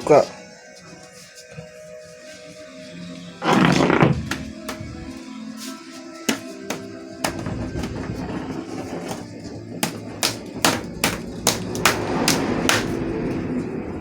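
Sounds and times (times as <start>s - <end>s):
steady background noise: 6.6s - 14.0s
sharp knocks: 9.8s - 13.0s.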